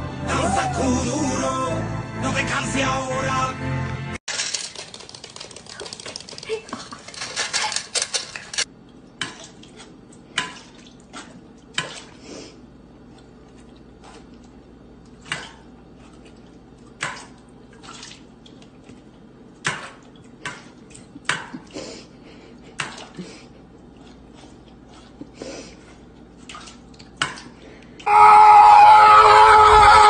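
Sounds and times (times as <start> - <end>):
hard objects clinking together: 4.3 - 8.7.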